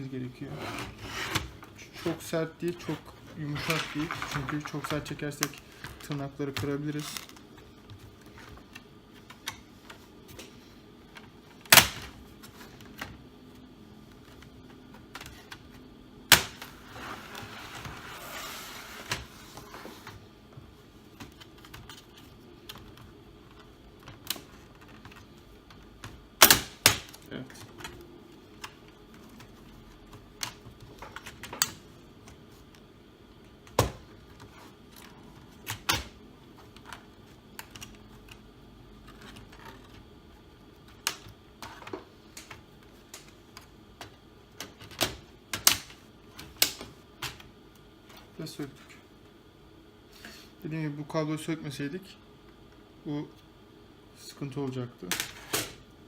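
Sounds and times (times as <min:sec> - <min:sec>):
plastic scraping on plastic: 0:00.4 - 0:07.4, 0:16.6 - 0:20.2.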